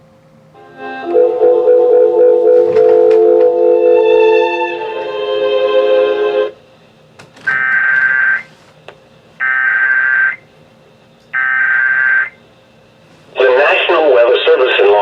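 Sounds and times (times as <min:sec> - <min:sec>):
music: 0:00.6 - 0:06.6.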